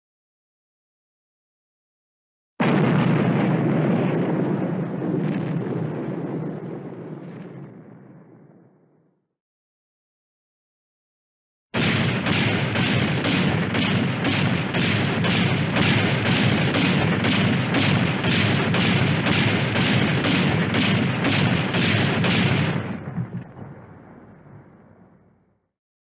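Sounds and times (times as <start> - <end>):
cannon fire booms: 2.6 - 8.8, 11.8 - 25.4.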